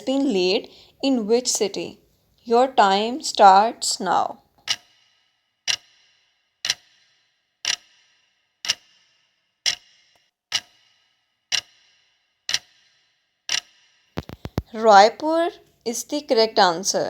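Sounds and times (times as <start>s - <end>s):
countdown timer ticking: 0.0s - 4.8s, 5.7s - 6.0s, 6.6s - 7.0s, 7.6s - 8.0s, 9.7s - 12.9s, 13.5s - 17.0s.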